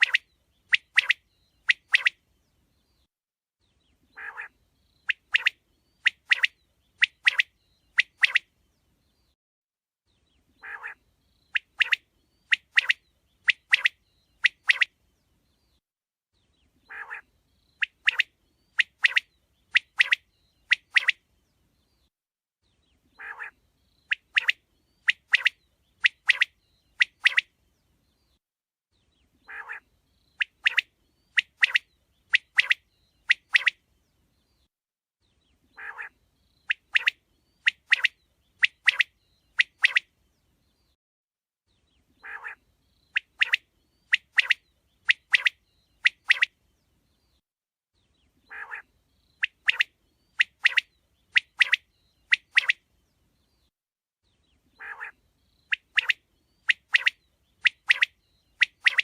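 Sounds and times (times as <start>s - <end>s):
quail calling: 4.2s - 4.5s, 10.6s - 11.0s, 16.9s - 17.2s, 23.2s - 23.6s, 29.4s - 29.8s, 35.8s - 40.0s, 42.2s - 42.6s, 48.5s - 50.8s, 54.8s - 59.0s.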